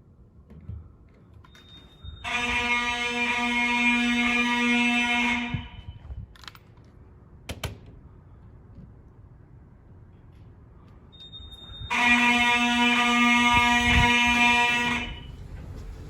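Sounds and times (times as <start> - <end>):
buzzy fire alarm horn: 2.0 - 6.1, 11.5 - 15.3.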